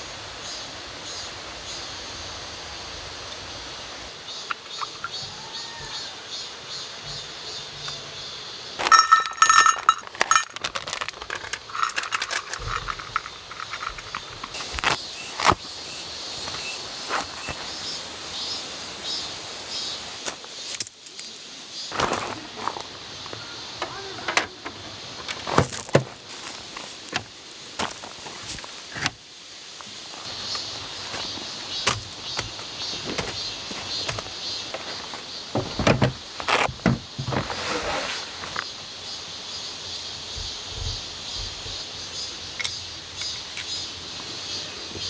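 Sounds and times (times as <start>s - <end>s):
metal objects clinking: 8.8s - 14.6s.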